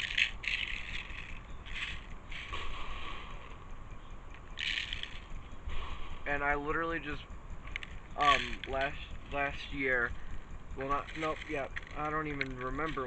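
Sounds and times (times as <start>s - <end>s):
plastic pellets rattling and clicking: 0.0s - 2.7s, 4.3s - 5.4s, 7.6s - 9.4s, 10.8s - 13.0s.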